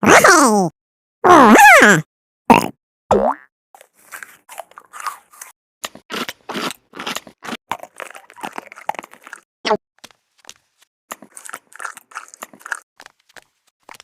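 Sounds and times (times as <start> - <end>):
cartoon munching and crunchy bites: 3.8 - 9.8, 11.1 - 14.0.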